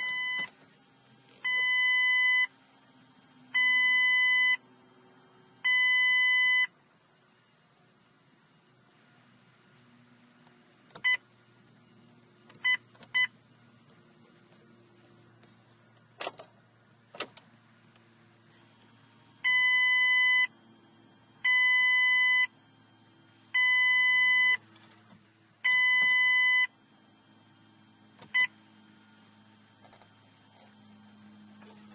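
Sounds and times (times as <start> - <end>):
car warning chime beeping: 0.0 - 0.5, 1.4 - 2.6, 3.5 - 4.6, 5.6 - 6.8, 11.0 - 11.2, 12.6 - 13.4, 19.4 - 22.6, 23.5 - 24.6, 25.6 - 26.8, 28.3 - 28.6.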